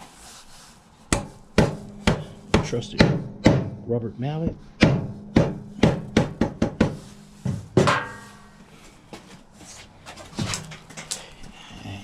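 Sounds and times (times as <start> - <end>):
rubber mallet striking axle: 1.1 - 3.8, 4.8 - 8.3.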